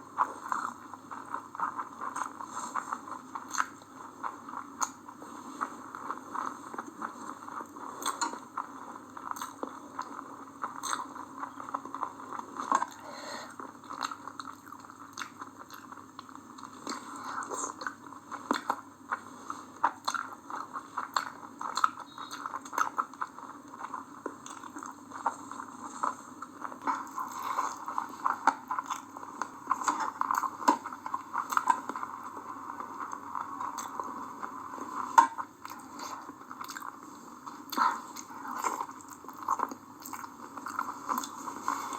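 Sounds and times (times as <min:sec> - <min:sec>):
person chewing food: 0:00.0 - 0:41.9.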